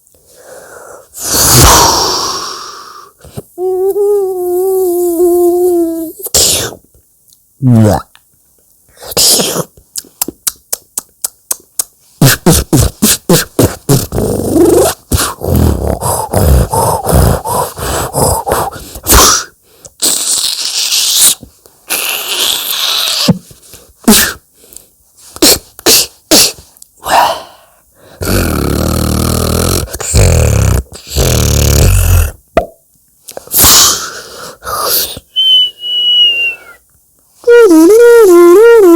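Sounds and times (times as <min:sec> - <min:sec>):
breathy hiss: 0:00.0 - 0:06.8, 0:12.0 - 0:32.4, 0:33.3 - 0:35.4
beatboxer mouth clicks and pops: 0:06.9 - 0:15.4, 0:19.8 - 0:22.1, 0:32.5 - 0:33.5.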